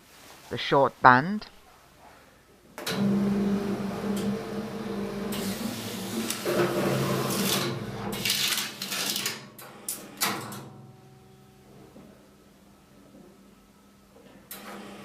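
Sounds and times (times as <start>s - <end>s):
machine motor hum: 2.8s - 9.2s.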